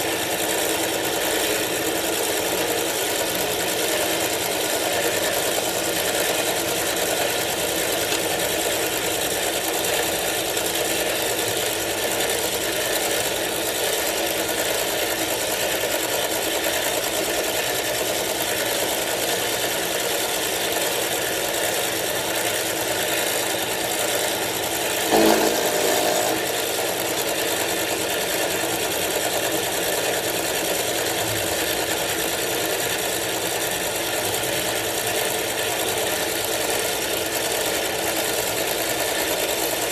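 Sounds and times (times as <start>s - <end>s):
milling machine cutting: 21.0s - 32.1s
brief louder whine: 25.1s - 26.5s.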